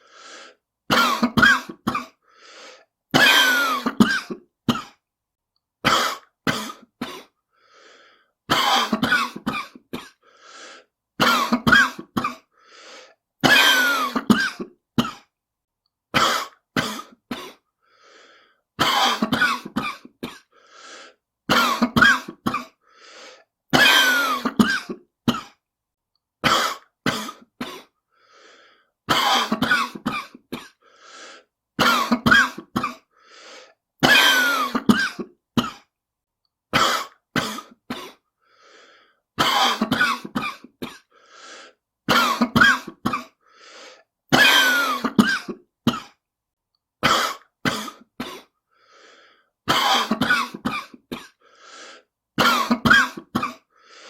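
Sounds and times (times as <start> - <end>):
faint breaths: 0.0 - 0.6, 2.2 - 2.9, 7.5 - 8.4, 10.1 - 11.0, 12.5 - 13.2, 17.8 - 18.7, 20.4 - 21.2, 22.8 - 23.5, 28.0 - 29.0, 30.7 - 31.6, 33.1 - 33.8, 38.2 - 39.3, 41.0 - 41.8, 43.4 - 44.1, 48.6 - 49.6, 51.3 - 52.2, 53.6 - 54.0
person coughing: 0.9 - 2.2, 3.1 - 5.0, 5.8 - 7.4, 8.5 - 10.2, 11.2 - 12.5, 13.4 - 15.3, 16.1 - 17.7, 18.8 - 20.6, 21.5 - 22.8, 23.7 - 25.6, 26.4 - 28.0, 29.1 - 30.8, 31.8 - 33.1, 34.0 - 35.9, 36.7 - 38.3, 39.4 - 41.2, 42.1 - 43.4, 44.3 - 46.2, 47.0 - 48.6, 49.7 - 51.4, 52.4 - 53.7.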